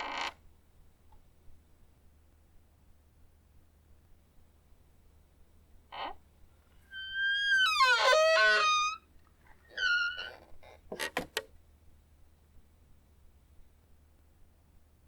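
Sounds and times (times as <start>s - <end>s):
squeaky door hinge creaking: 6.9s - 9.0s, 9.7s - 11.3s.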